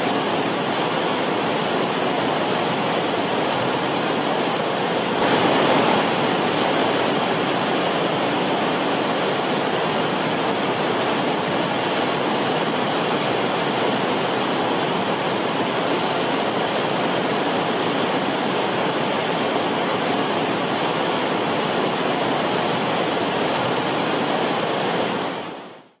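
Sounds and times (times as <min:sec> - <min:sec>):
stream water rushing: 0:00.0 - 0:26.0.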